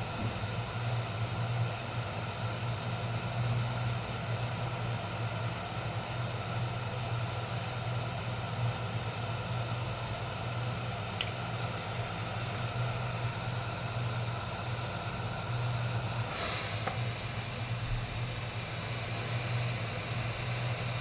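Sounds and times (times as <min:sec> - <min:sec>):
low machine hum with hiss: 0:00.0 - 0:21.0
sharp click: 0:11.2 - 0:11.4.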